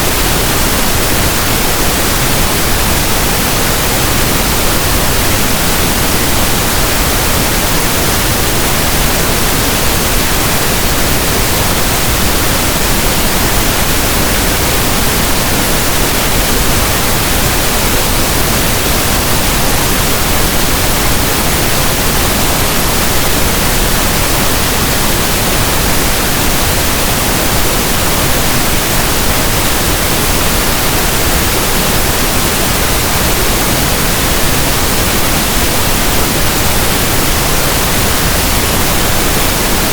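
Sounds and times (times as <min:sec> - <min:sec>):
pink noise static: 0:00.0 - 0:39.9.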